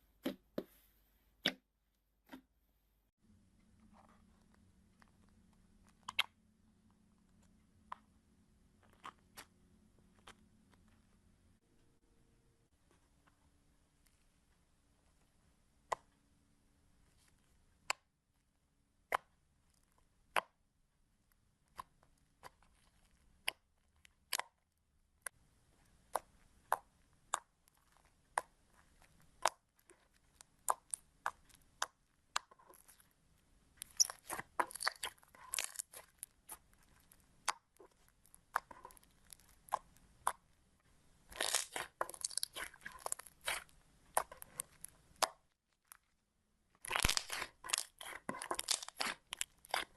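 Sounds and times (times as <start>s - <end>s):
slime popping and crackling: 26.1s - 33.1s, 33.8s - 40.5s, 41.3s - 46.1s, 46.8s - 49.9s.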